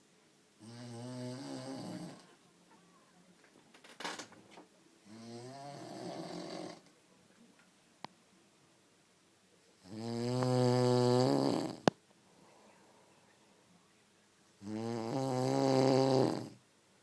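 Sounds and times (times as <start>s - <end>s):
man snoring: 0.6s - 2.2s, 5.1s - 6.8s, 9.8s - 11.9s, 14.6s - 16.6s.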